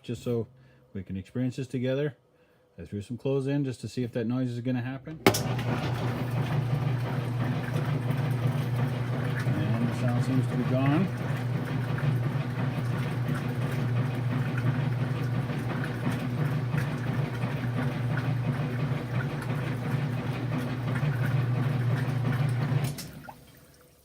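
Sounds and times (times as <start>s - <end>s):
washing machine agitating: 5.2s - 24.0s.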